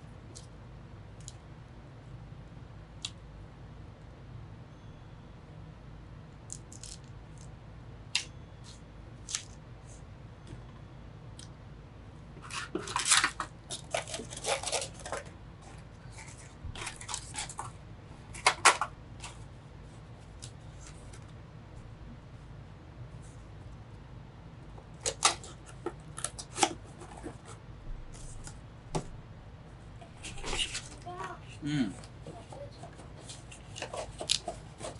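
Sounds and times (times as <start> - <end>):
packaging rustling and scraping: 12.4 - 19.5, 25.0 - 27.6, 30.3 - 31.0, 32.2 - 34.9.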